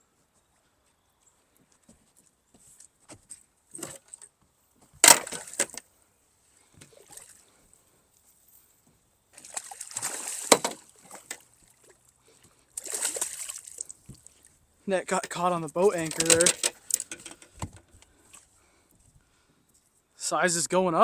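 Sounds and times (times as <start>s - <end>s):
water splashing: 5.0s - 5.8s, 6.8s - 7.5s, 9.4s - 17.0s
fish thrashing in a net: 9.4s - 12.0s, 12.7s - 14.6s, 15.9s - 17.1s.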